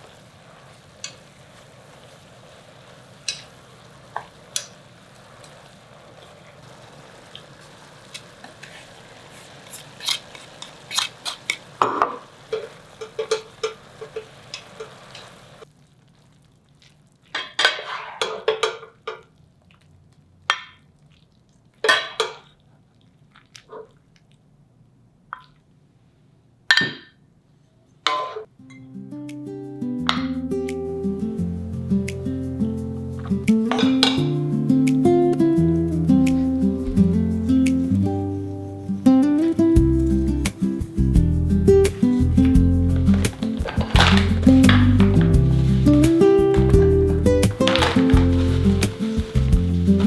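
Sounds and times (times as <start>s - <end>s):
food sizzling in a pan: 0.0s - 18.8s, 30.9s - 50.0s
utensils clinking on dishes: 9.8s - 15.4s, 33.2s - 34.4s, 41.9s - 50.0s.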